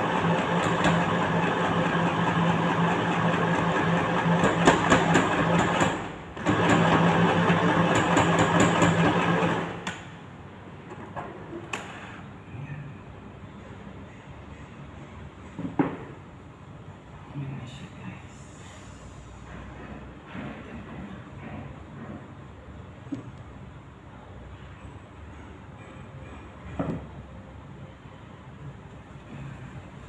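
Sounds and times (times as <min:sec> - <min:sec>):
sewing machine stitching: 0:00.0 - 0:09.8.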